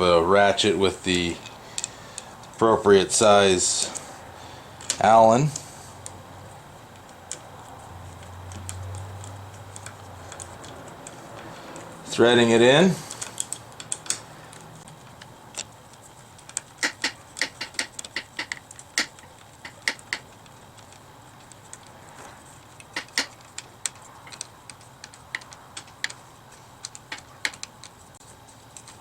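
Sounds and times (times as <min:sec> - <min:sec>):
hand ratchet clicking: 0:06.9 - 0:12.1, 0:12.7 - 0:15.7, 0:16.4 - 0:21.9, 0:22.6 - 0:26.2.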